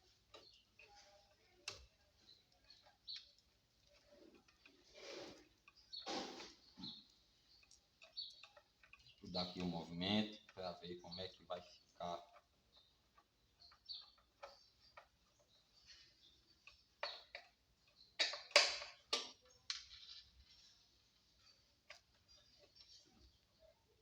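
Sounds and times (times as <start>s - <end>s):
light clicks and knocks: 0.0s - 23.5s
scraping sounds: 4.0s - 7.1s.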